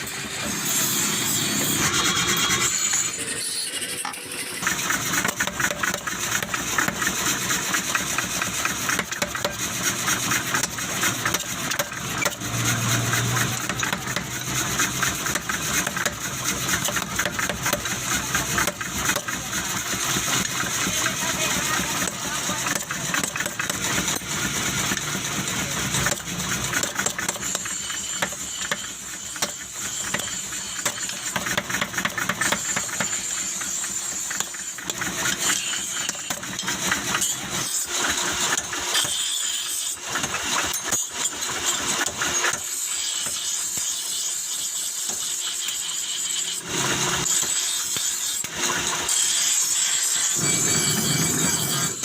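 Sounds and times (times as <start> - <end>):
forging machinery clattering: 0.0 - 39.2.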